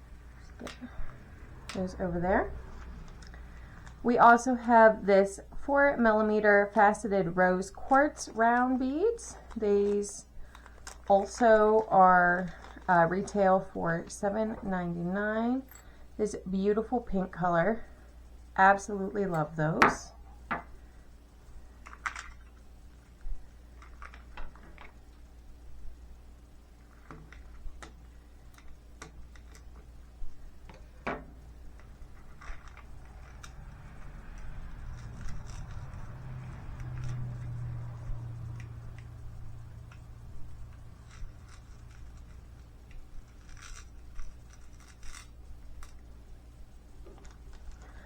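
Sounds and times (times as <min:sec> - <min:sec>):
low hum: 0:00.0 - 0:21.7, 0:28.1 - 0:48.0
beads and packaging clicking: 0:00.3 - 0:04.1, 0:08.5 - 0:13.4, 0:30.7 - 0:46.3.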